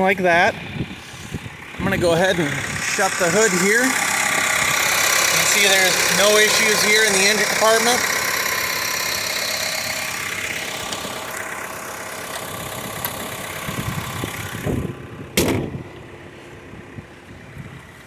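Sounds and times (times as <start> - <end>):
car engine idling: 0.0 - 18.0
car hood slamming shut: 15.4 - 15.8
car hood thumps: 15.4 - 15.8.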